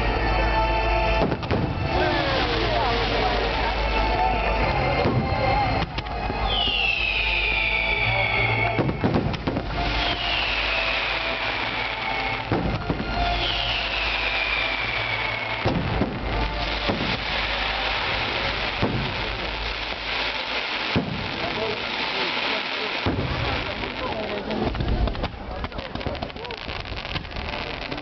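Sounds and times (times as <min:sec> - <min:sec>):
firework bangs: 0:01.2 - 0:04.2, 0:04.8 - 0:28.0
steady crackling hiss: 0:01.3 - 0:28.0
firework whistles falling in pitch: 0:05.1 - 0:24.1.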